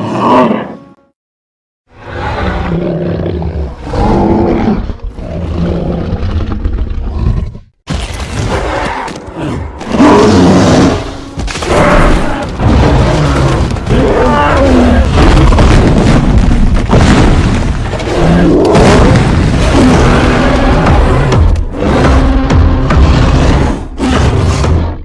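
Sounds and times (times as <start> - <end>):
creature roars and grunts: 0.0 - 0.8, 8.5 - 16.0, 17.9 - 25.0.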